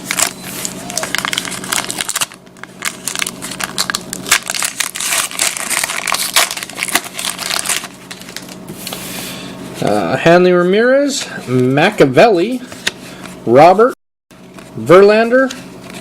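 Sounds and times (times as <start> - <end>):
card wrappers tearing and crinkling: 0.0 - 8.7.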